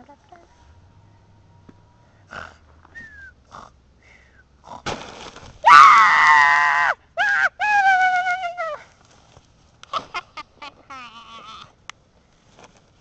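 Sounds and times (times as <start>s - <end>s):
sharp crack: 4.8s - 5.7s
loud rough scream: 5.6s - 7.0s.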